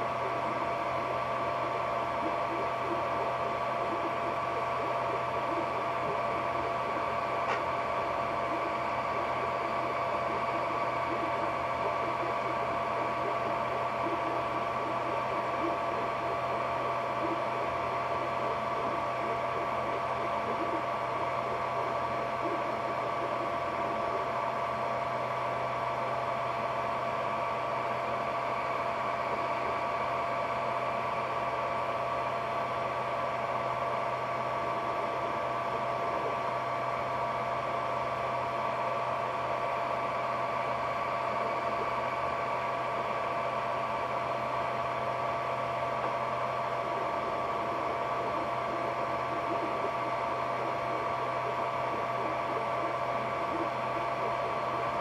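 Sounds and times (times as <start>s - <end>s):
low hum: 0.0s - 26.9s, 40.6s - 55.0s
cooling fans whirring: 0.0s - 55.0s
high-pitched whine: 0.0s - 55.0s.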